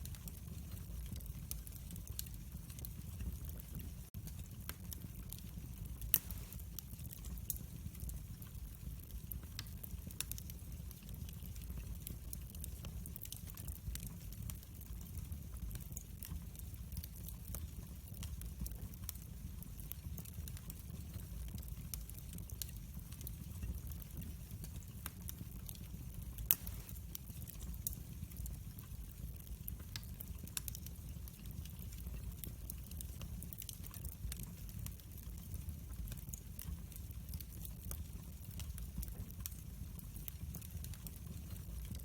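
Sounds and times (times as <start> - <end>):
wood fire crackling: 0.0 - 42.0.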